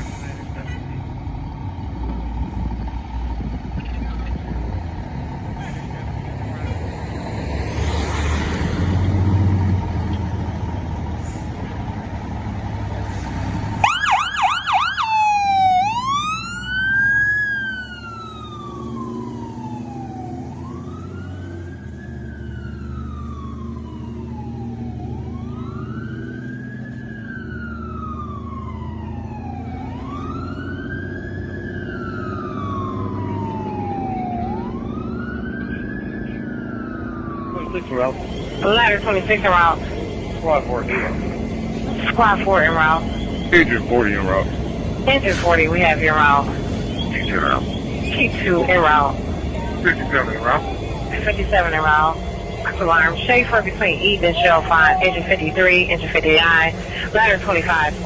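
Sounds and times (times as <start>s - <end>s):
truck engine running: 0.0s - 58.0s
siren yelping and wailing: 13.7s - 58.0s.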